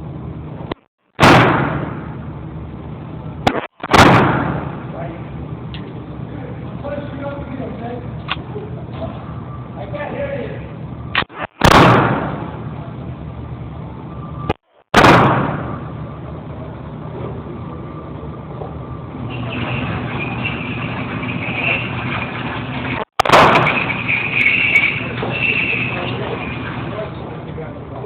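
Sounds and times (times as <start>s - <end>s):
steady background noise: 0.0s - 28.0s
handgun shots: 1.2s - 2.0s, 3.5s - 4.7s, 11.2s - 12.4s, 15.0s - 15.7s, 23.2s - 23.8s.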